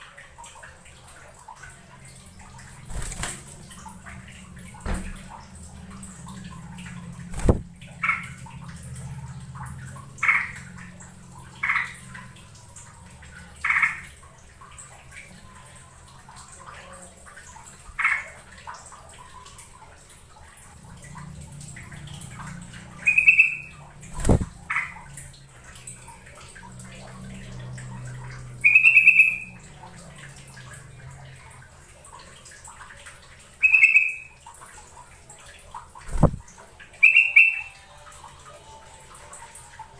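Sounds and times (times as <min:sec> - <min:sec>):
bird call notes: 0:23.0 - 0:23.7, 0:28.6 - 0:29.5, 0:37.0 - 0:37.9.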